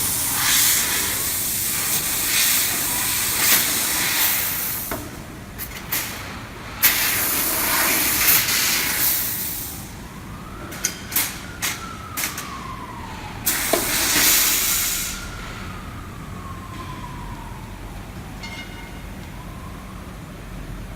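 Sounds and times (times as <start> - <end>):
laser cutter gas hiss: 0.0 - 5.0, 6.8 - 9.8, 13.4 - 15.4
motor whine: 12.8 - 17.2.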